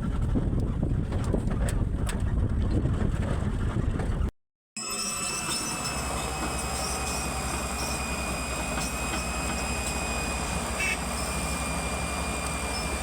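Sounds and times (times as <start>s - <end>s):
excavator diesel engine running: 5.4s - 13.0s.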